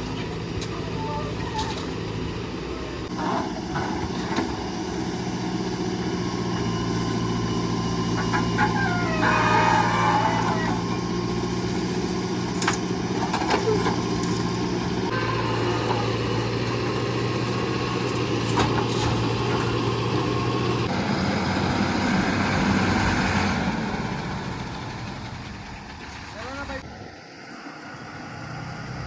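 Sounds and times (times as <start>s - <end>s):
heavy diesel engine running: 0.0s - 29.0s.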